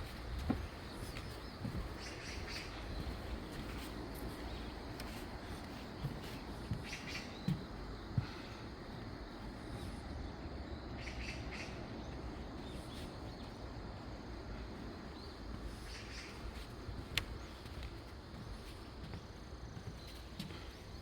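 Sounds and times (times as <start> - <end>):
low background noise: 0.0 - 21.0
bird chirps: 6.8 - 7.7, 11.0 - 13.6.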